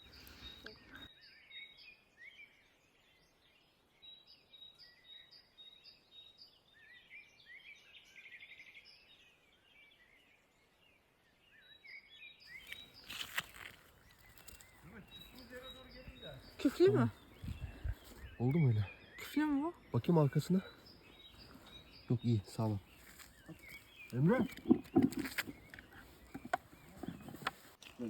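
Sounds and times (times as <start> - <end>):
songbirds singing: 0.0 - 28.0
rustling: 20.8 - 28.0.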